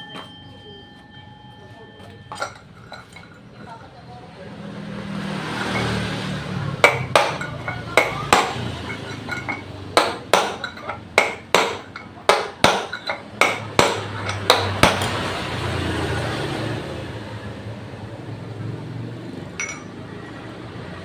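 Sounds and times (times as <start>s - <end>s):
hammer striking metal: 6.8s - 15.6s, 19.6s - 20.0s.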